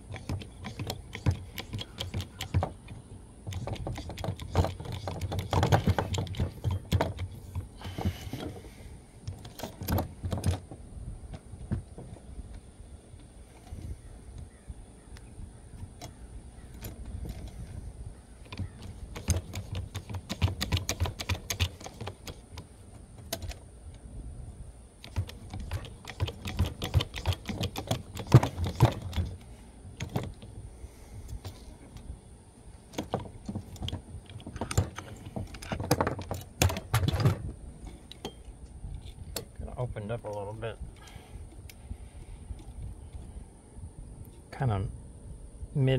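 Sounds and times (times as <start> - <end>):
hydraulic press clicking and clattering: 0.0 - 8.7, 18.4 - 23.6, 25.0 - 29.4.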